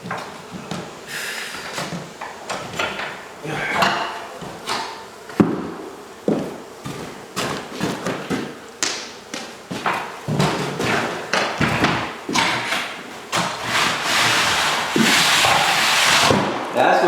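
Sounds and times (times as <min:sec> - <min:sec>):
knocks and thuds on wood: 0:03.8 - 0:13.8.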